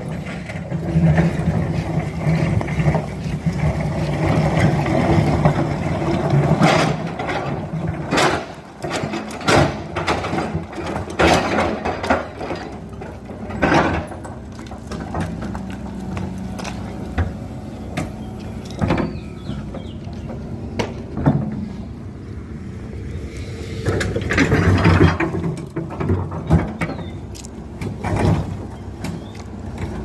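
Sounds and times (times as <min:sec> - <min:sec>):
excavator engine hum: 0:00.0 - 0:30.0
metallic clanks and knocks: 0:06.4 - 0:15.7, 0:23.9 - 0:29.9.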